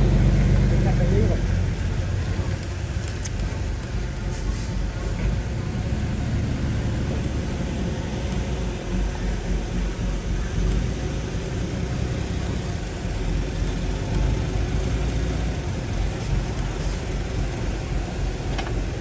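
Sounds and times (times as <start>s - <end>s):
heavy diesel engine rumbling: 0.0s - 19.0s.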